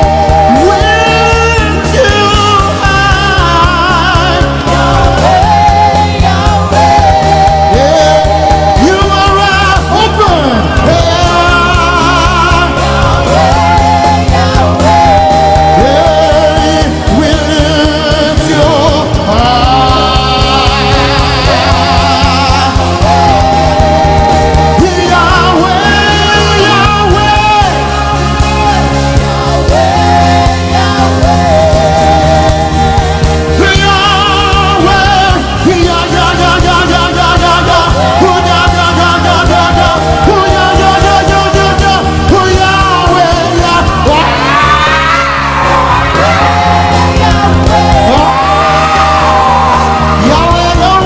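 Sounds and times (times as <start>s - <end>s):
person singing long notes: 0.0s - 51.0s
worship band playing: 0.0s - 51.0s.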